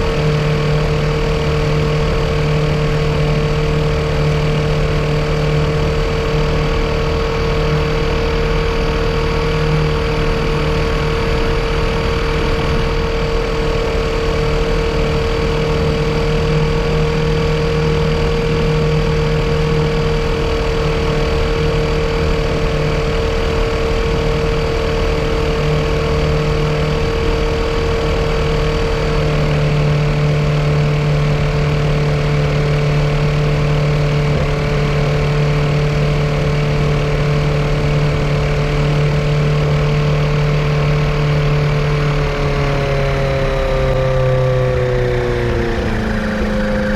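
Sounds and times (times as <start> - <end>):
engine running steadily: 0.0 - 46.9.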